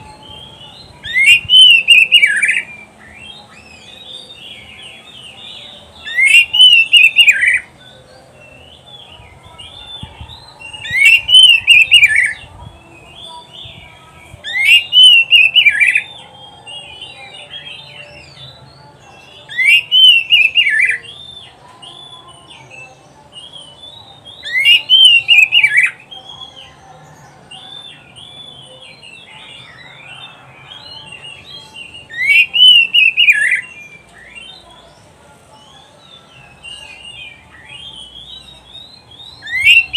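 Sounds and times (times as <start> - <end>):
bird singing falling phrases: 0.0 - 39.9
soft bird chirps and twitters: 0.0 - 39.9.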